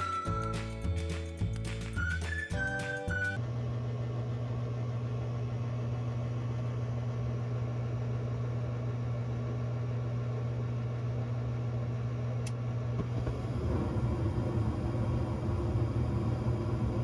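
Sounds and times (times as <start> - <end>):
motor humming: 13.0 - 17.0.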